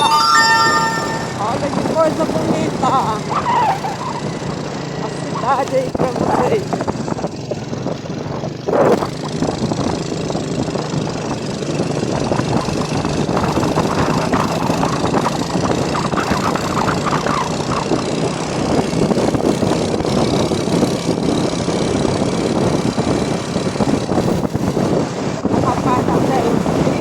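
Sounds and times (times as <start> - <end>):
vehicle engine and road noise: 1.4 - 27.0
wind on microphone: 6.0 - 27.0.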